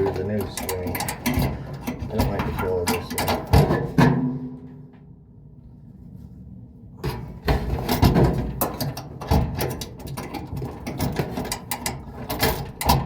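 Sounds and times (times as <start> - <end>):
metal parts and tools clicking: 0.0 - 3.6.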